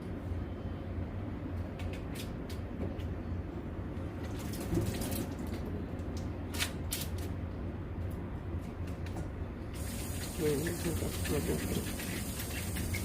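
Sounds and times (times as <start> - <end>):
steady low hum: 0.0 - 13.0
splashing while washing vegetable: 4.2 - 5.6, 9.8 - 13.0.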